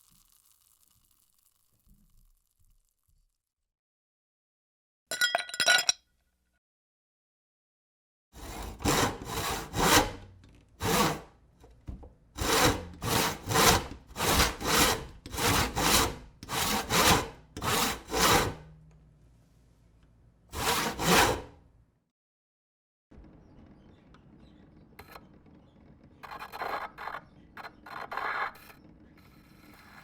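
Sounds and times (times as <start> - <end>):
saw rasping back and forth: 8.4 - 11.4, 12.4 - 18.8, 20.5 - 21.6.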